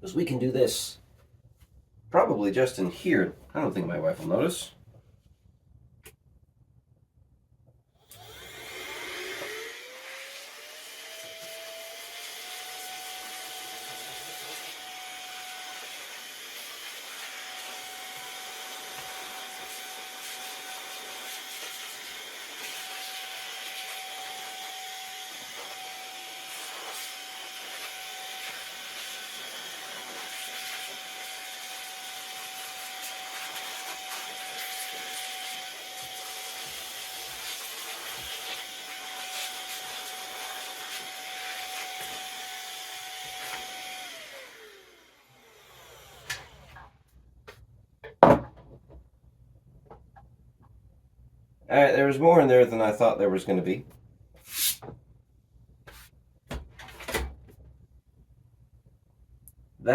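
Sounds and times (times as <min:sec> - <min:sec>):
electric blower motor whine: 0:08.1 - 0:46.8.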